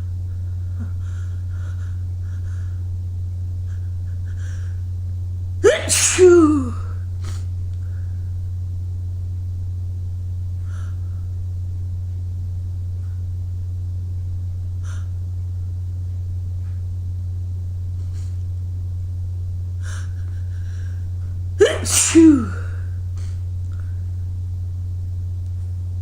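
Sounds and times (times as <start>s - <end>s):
person breathing softly: 0.0s - 3.0s, 3.6s - 5.0s, 7.2s - 8.4s, 10.6s - 11.4s, 19.8s - 21.4s
steady low hum: 0.0s - 26.0s.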